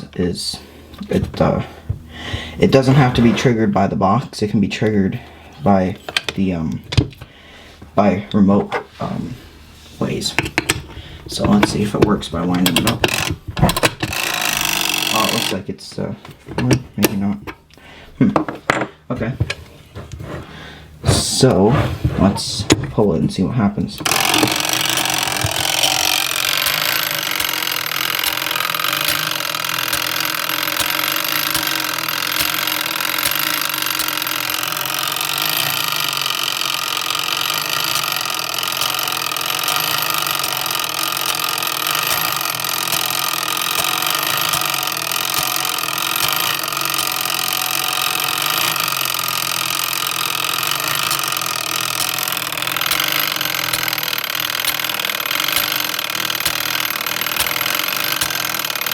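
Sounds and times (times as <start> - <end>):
fire alarm mechanism whirring: 11.4 - 15.7, 23.9 - 58.9.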